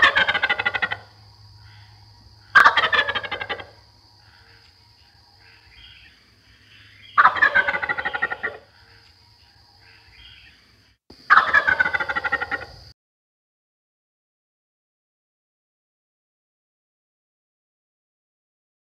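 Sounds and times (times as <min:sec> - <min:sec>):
turkey gobbling: 0:00.0 - 0:04.6, 0:05.4 - 0:09.0, 0:11.3 - 0:12.9.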